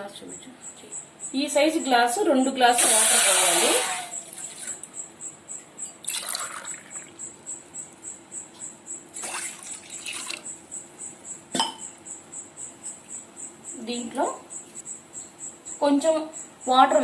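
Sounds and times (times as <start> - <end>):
cricket chirping: 0.0 - 17.0
water pouring from a glass: 6.0 - 7.1, 9.2 - 10.4.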